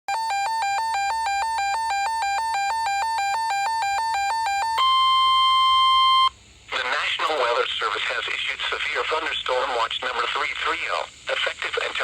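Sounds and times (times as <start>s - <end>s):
two-pitch warbling alarm: 0.1s - 6.3s.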